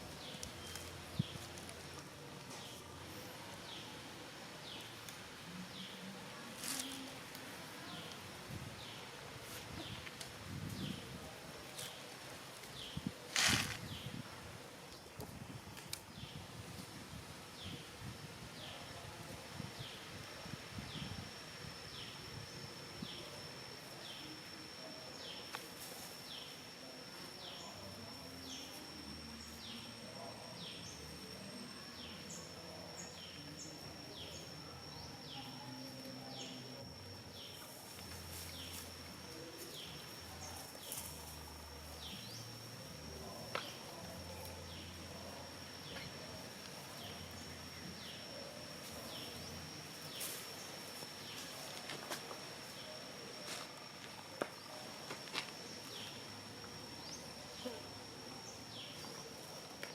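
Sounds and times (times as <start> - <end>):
high insect drone: 0.0 - 59.9.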